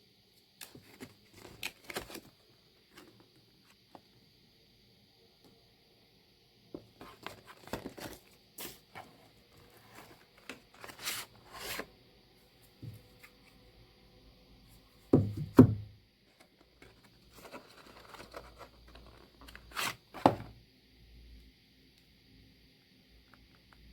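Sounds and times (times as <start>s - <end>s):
packaging rustling and scraping: 0.6s - 3.2s, 6.8s - 11.9s, 16.5s - 20.5s.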